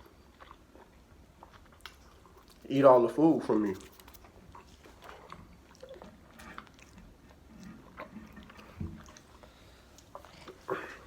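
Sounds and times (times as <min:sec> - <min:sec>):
chewing and mouth clicks: 0:00.0 - 0:11.0.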